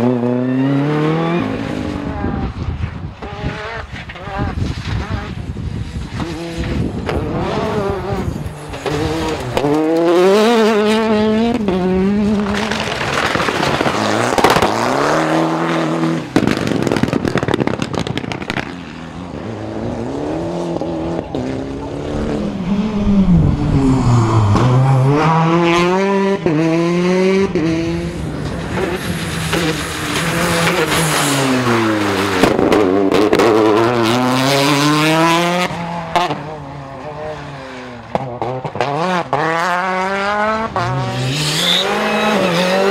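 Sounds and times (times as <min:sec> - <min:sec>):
rally car engines at full throttle: 0:00.0 - 0:42.9
cars braking: 0:20.7 - 0:34.1.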